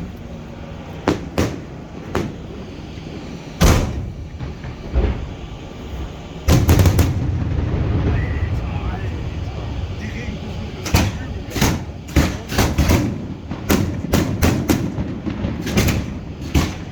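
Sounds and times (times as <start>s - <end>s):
fireworks booming: 0.0s - 16.9s
low steady rumble: 0.0s - 16.9s.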